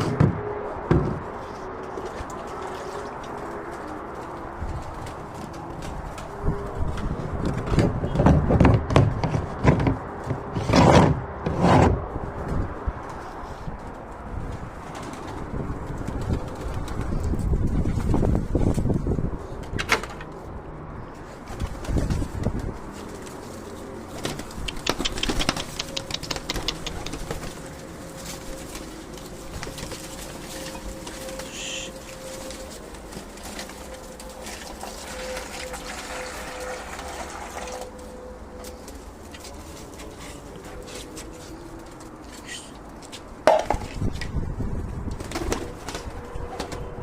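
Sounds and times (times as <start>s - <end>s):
knocks and bumps on wood: 0.0s - 1.3s, 7.0s - 12.0s
loud rustling bursts: 9.4s - 19.7s, 20.4s - 35.8s
pigeons cooing: 24.0s - 33.6s
sharp clicks: 24.4s - 27.4s.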